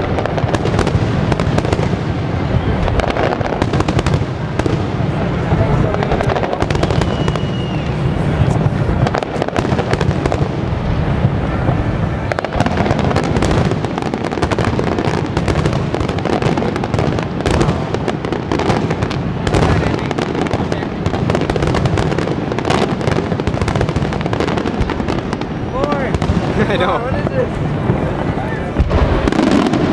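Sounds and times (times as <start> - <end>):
fireworks booming rumble: 0.0 - 29.9
sharp firework bangs: 0.0 - 29.9.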